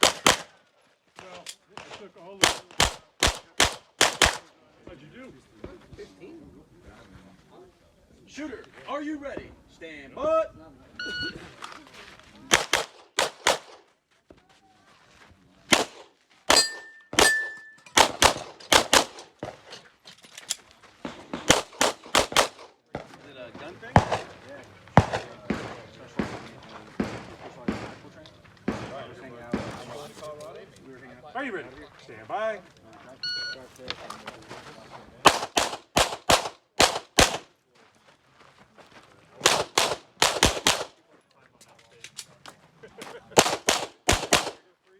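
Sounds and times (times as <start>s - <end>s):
rapid pistol fire: 1.8s - 4.4s, 18.0s - 19.3s, 21.3s - 22.7s, 35.3s - 37.4s, 39.4s - 40.9s, 43.4s - 44.6s
pistol firing double taps: 21.3s - 22.7s, 39.4s - 40.9s, 43.4s - 44.6s.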